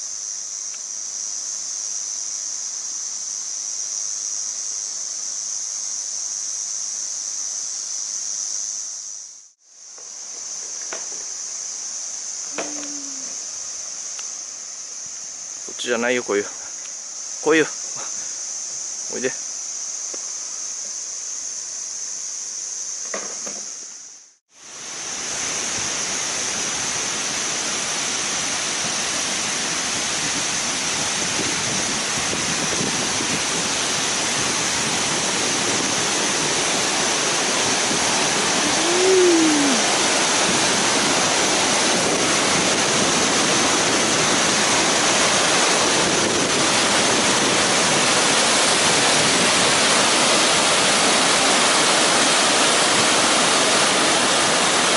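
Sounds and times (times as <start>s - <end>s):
high insect drone: 0.0s - 54.9s
rising and falling call: 12.5s - 13.5s, 38.6s - 40.0s
waterfall roaring: 24.7s - 54.9s.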